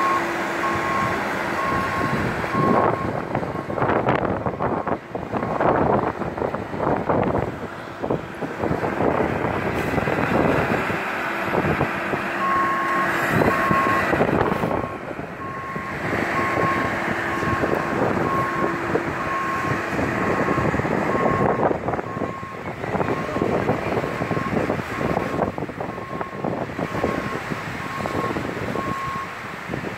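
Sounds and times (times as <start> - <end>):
truck reversing alarm beeping: 0.0 - 6.2, 11.5 - 29.4
engine and street noise: 0.0 - 29.9.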